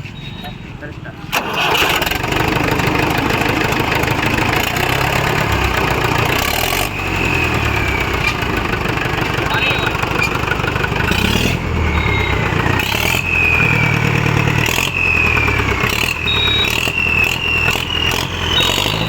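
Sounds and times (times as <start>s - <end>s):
tractor diesel engine revving: 1.3s - 19.0s
turbocharger whistle: 11.0s - 19.0s.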